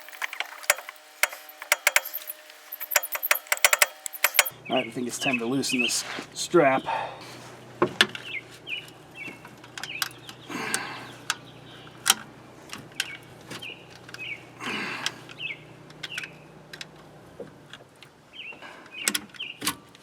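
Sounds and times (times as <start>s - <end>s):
metal work clicks and knocks: 0.0s - 4.5s
small birds chirping: 0.0s - 20.0s.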